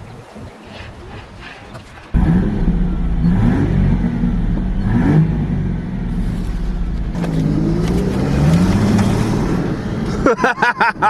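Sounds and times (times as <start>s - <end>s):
car engine revving: 2.1s - 10.3s.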